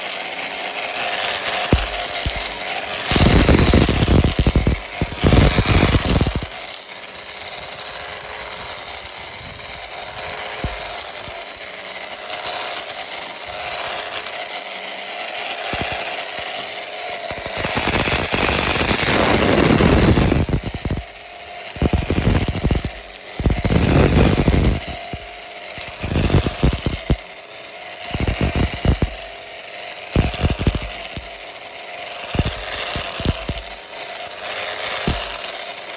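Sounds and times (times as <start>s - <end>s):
power tool stripping bark: 0.0s - 35.9s.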